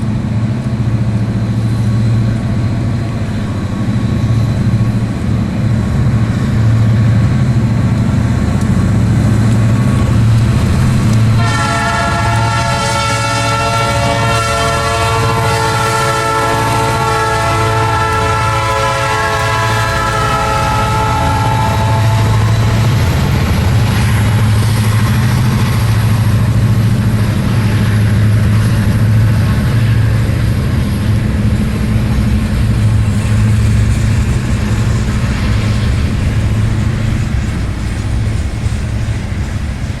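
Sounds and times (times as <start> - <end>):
locomotive engine drone: 0.0 - 40.0
wheels rushing on rails: 0.0 - 40.0
multi-note horn chord: 11.4 - 22.4.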